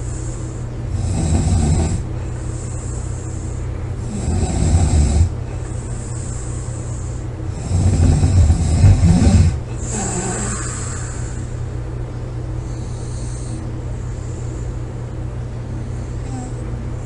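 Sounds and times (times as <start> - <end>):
breathy hiss: 0.0 - 11.8, 12.6 - 16.6
person snoring loudly: 0.9 - 2.1, 4.0 - 5.4, 7.5 - 11.5.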